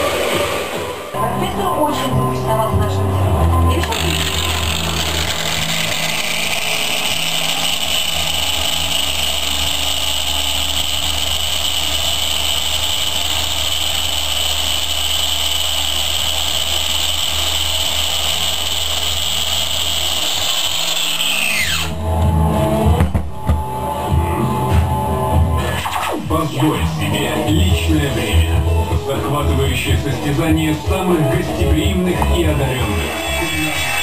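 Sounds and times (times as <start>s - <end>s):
electric power tool whining: 3.0s - 26.2s, 32.0s - 34.0s.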